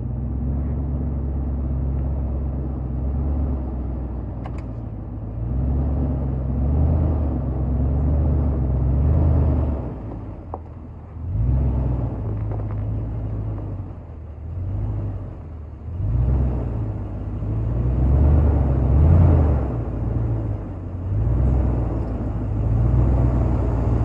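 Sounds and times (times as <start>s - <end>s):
engine revving in surges: 5.3s - 10.3s, 11.2s - 13.8s, 14.6s - 24.0s.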